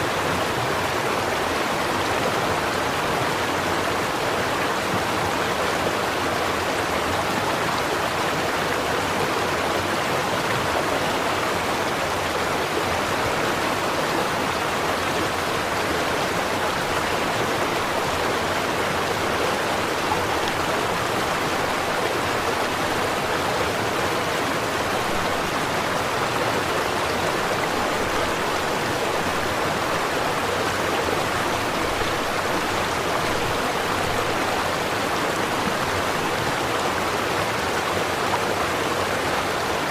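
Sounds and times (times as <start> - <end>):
brook flowing over stones: 0.0 - 39.9.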